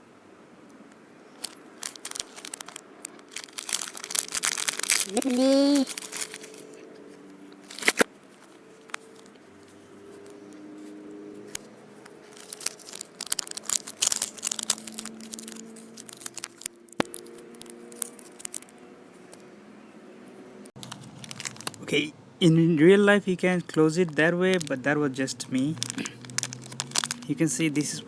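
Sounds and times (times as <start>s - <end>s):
packaging crinkling: 1.3s - 19.4s, 20.8s - 21.9s, 23.5s - 28.0s
plastic toy egg clicking and snapping: 1.4s - 6.7s, 12.3s - 18.7s, 20.8s - 21.8s, 23.6s - 24.8s, 25.4s - 27.3s.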